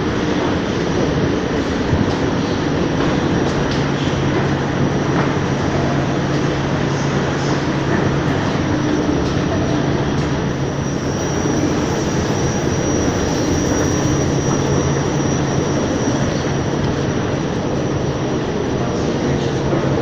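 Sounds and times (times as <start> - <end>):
thin high whine: 8.5 - 18.3.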